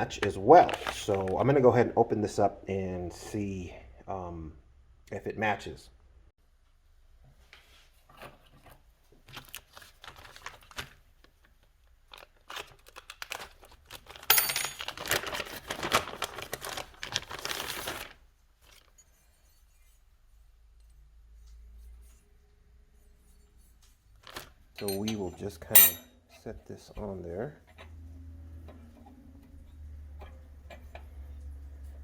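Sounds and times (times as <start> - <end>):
packaging rustling and crinkling: 0.1 - 1.4, 9.2 - 18.9, 24.2 - 24.7
packaging tearing: 12.1 - 18.2.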